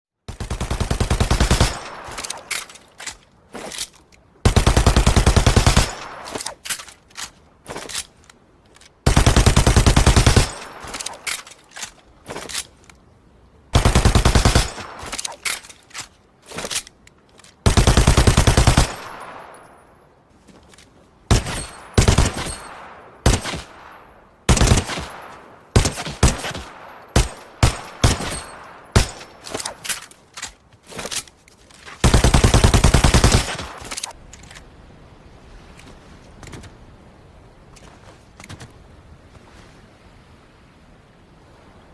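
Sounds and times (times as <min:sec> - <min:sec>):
machine pistol automatic bursts: 0:32.0 - 0:34.1.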